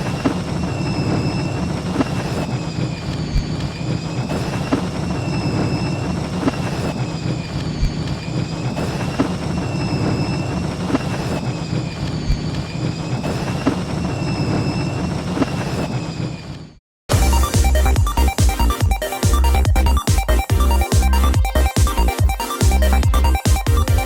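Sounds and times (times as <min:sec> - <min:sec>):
starship engine low rumble: 0:00.0 - 0:15.4
wavering high engine whine: 0:00.0 - 0:16.1.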